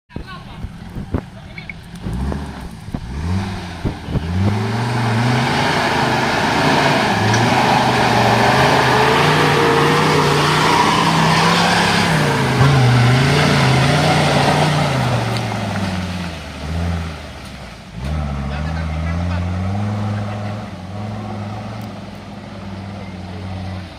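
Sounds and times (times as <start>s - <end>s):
diesel engine revving: 0.4s - 23.9s.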